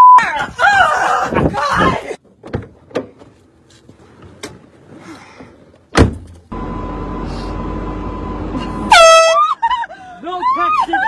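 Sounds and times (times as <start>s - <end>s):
car engine humming: 2.6s - 11.0s
car door slamming: 5.9s - 6.4s.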